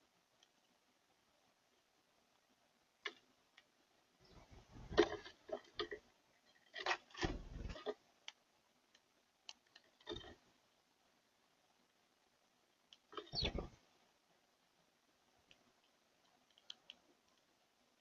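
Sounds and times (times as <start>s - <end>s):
dull knocks and thumps: 6.8s - 7.9s.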